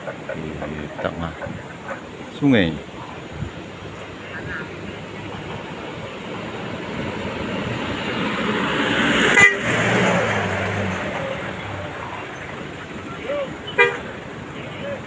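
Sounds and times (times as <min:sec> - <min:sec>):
vehicle passing by: 0:00.0 - 0:15.0
car horn toot: 0:09.3 - 0:09.8, 0:13.7 - 0:15.0.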